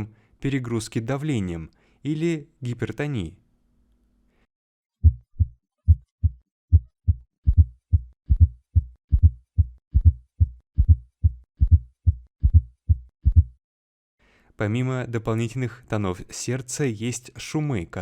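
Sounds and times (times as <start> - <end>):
heart beating: 5.0 - 13.6.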